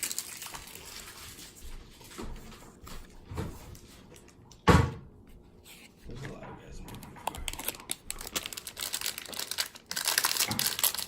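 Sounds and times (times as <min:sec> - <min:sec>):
rustling of cards and wrappers: 0:00.0 - 0:03.1, 0:05.6 - 0:11.0.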